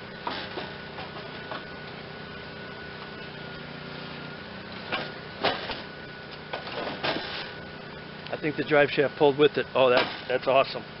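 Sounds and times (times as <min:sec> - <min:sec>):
engine knocks and clunks: 0:00.0 - 0:11.0
steady background hum: 0:00.0 - 0:11.0.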